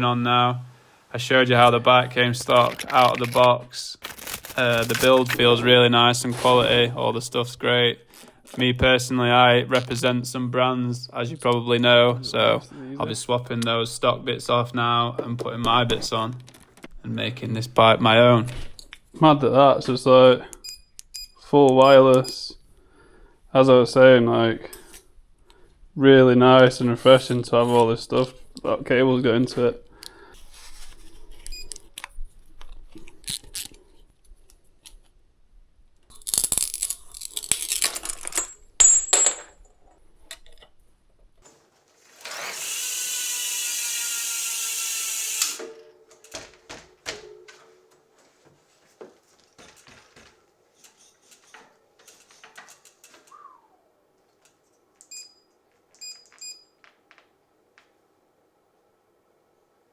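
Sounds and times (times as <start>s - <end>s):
tools and parts clicking and rattling: 2.4s - 5.6s, 36.1s - 40.8s, 45.4s - 47.9s, 49.4s - 53.4s, 54.3s - 57.3s
small power tool whirring: 42.1s - 45.8s.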